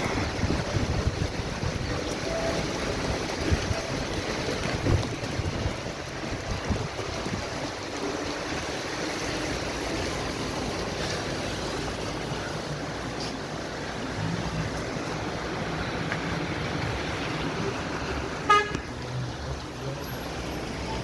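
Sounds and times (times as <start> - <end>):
wind buffeting microphone: 0.0 - 7.9.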